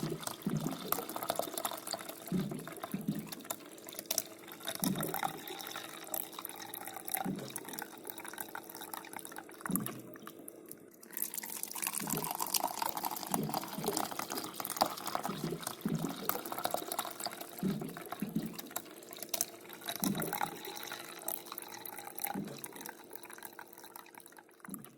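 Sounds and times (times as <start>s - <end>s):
low glugs of air bubbles: 0.0s - 8.4s, 9.5s - 10.2s, 11.1s - 23.0s
water running from tap into container: 0.0s - 24.9s.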